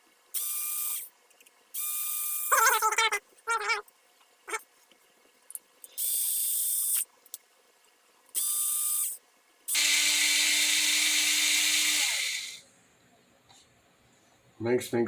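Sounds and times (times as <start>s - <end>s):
handheld power tool motor: 8.4s - 12.6s.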